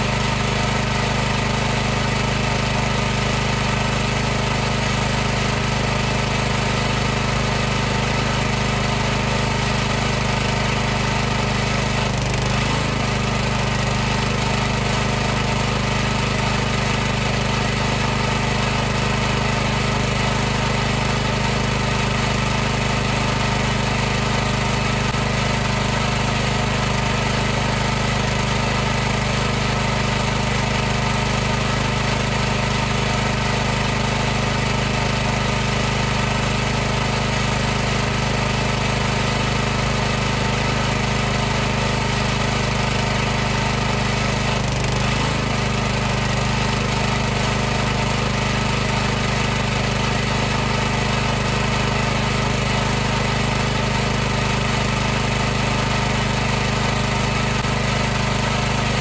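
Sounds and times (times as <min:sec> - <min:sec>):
pressure washer droning: 0:00.0 - 0:59.0.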